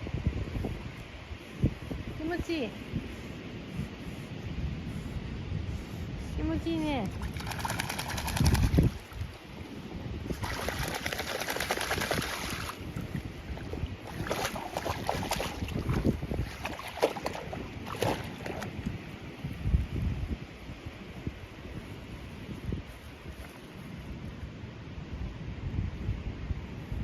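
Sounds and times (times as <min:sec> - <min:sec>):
wind rumbling on microphone: 0:00.0 - 0:27.0
water splashing and sloshing: 0:07.0 - 0:19.3.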